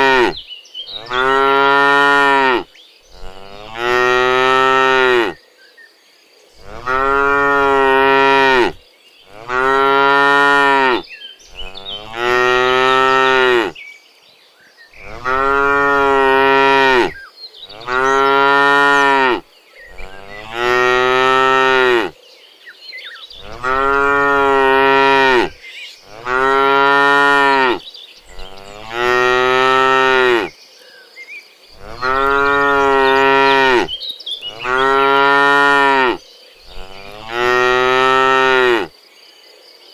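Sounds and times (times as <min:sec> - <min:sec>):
cattle mooing: 0:00.0 - 0:00.4, 0:01.0 - 0:05.4, 0:06.6 - 0:11.0, 0:11.6 - 0:13.8, 0:15.0 - 0:22.1, 0:23.4 - 0:27.8, 0:28.4 - 0:30.5, 0:31.8 - 0:33.9, 0:34.5 - 0:38.9.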